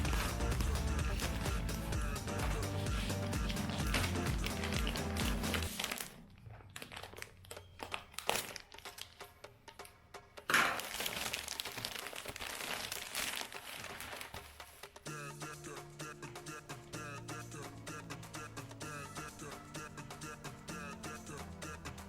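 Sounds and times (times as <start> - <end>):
plastic packaging crinkling: 0.0 - 9.4, 10.5 - 14.8.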